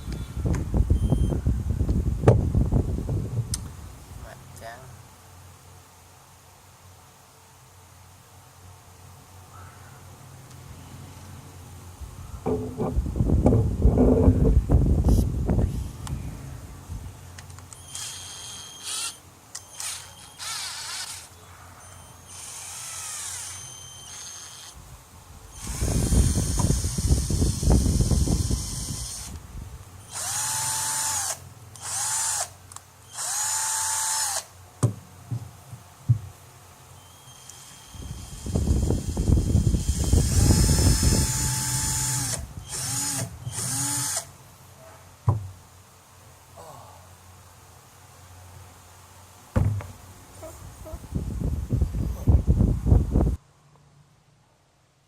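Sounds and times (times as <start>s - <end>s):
rough knocking rattle: 12.4s - 14.6s, 49.6s - 50.0s
cordless drill motor whirring: 17.7s - 21.3s, 22.2s - 24.8s, 25.5s - 29.4s, 30.0s - 34.5s, 37.0s - 44.3s.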